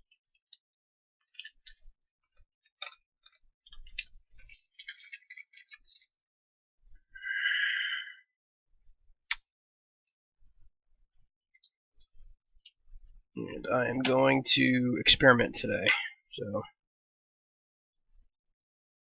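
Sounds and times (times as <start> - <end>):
small parts clicking and rattling: 2.7 - 6.2.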